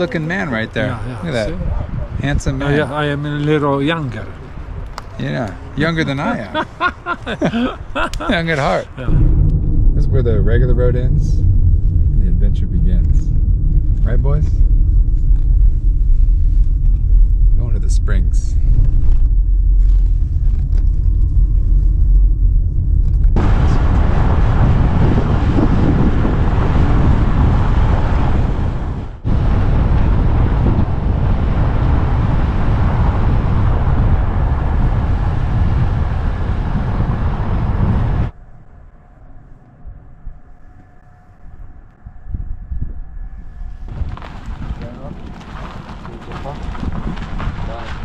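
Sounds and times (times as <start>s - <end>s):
vehicle rumble on rough road: 0.0s - 38.5s, 43.5s - 48.0s
heavy rushing noise: 5.6s - 39.1s
faint hum: 6.4s - 43.9s.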